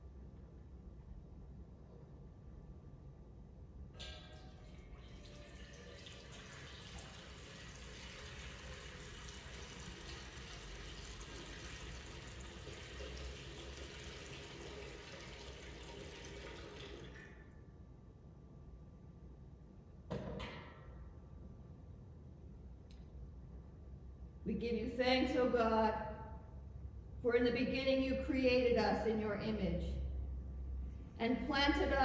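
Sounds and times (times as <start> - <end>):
water pouring and splashing: 4.6 - 17.3.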